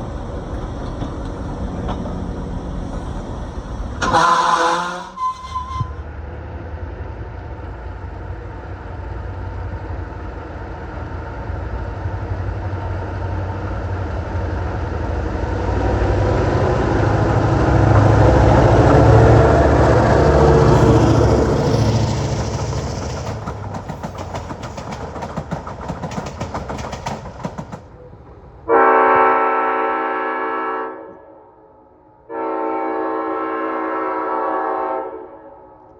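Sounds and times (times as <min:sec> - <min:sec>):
wheels clicking over rail joints: 0:00.0 - 0:06.0, 0:18.6 - 0:28.2
diesel locomotive engine rumble: 0:00.0 - 0:30.5
locomotive air horn: 0:04.0 - 0:06.0, 0:28.7 - 0:31.4, 0:32.3 - 0:35.7.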